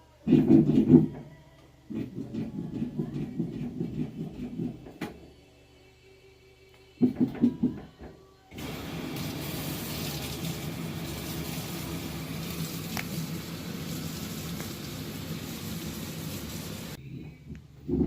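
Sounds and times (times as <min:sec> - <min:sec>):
washing machine running: 0:08.5 - 0:17.0.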